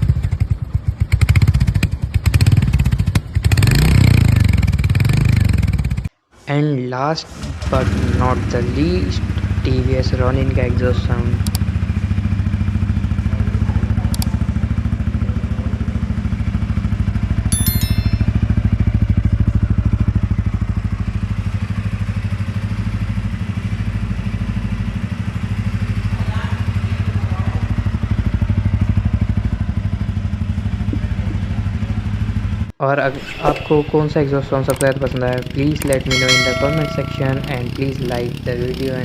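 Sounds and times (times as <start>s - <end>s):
motorcycle engine idling: 7.9s - 32.7s, 35.9s - 39.0s.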